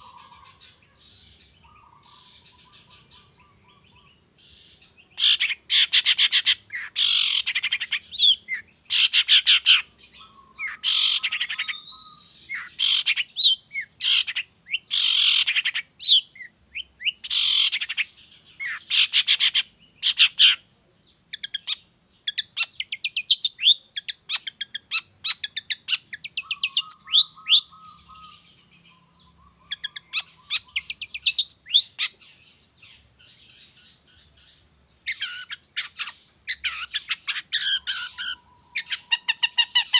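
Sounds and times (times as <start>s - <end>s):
bird chattering and warbling: 0.0s - 39.9s
bird singing harsh rasping bursts: 0.0s - 39.9s.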